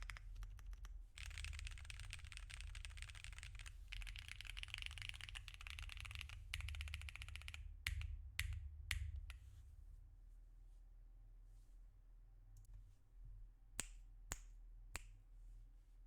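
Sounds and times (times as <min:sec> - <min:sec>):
fast mechanical keyboard typing: 0:00.0 - 0:08.6.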